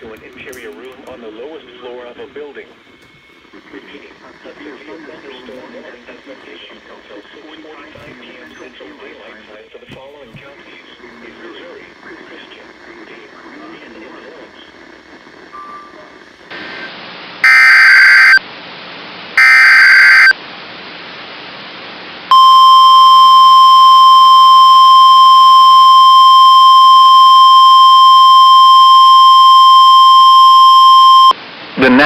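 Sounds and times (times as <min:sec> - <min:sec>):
background hiss: 0:00.2 - 0:17.1
steady warning alarm tone: 0:17.4 - 0:18.4, 0:19.4 - 0:20.4.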